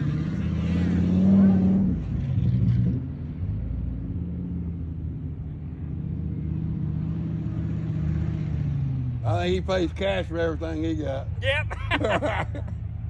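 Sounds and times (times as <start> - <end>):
car engine rumbling: 9.0 - 13.0.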